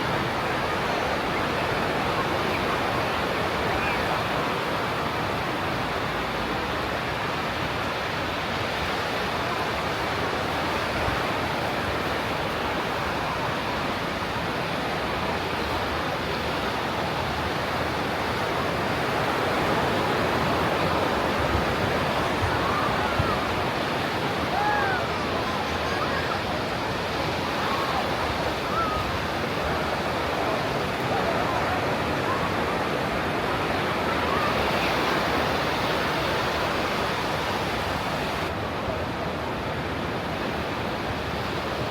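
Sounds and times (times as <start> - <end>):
ocean surf breaking on beach: 0.0 - 41.9.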